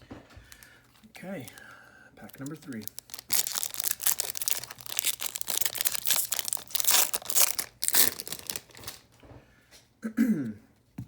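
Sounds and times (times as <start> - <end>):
foil wrapper crinkling and tearing: 0.5 - 9.1.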